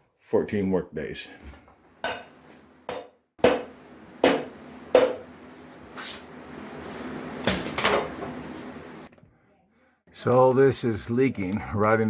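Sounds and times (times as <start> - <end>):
sharp ringing knocks: 2.0 - 5.3.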